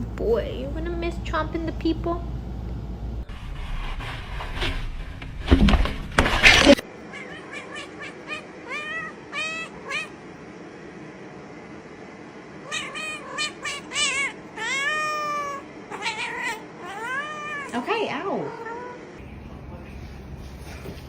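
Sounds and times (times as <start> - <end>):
cat meowing: 7.1 - 10.2, 12.6 - 19.0.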